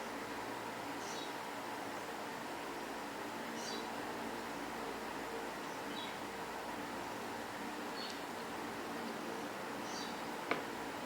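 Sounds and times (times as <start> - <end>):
background hiss: 0.0 - 11.0
faint hum: 0.0 - 11.0.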